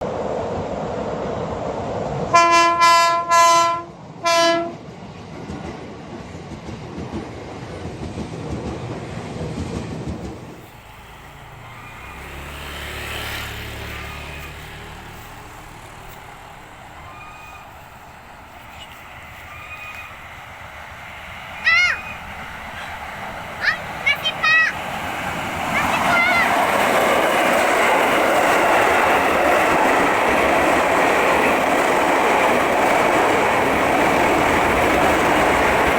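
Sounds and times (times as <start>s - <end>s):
train wheels rumbling on rails: 0.0s - 35.9s
train horn blasts: 2.3s - 4.8s.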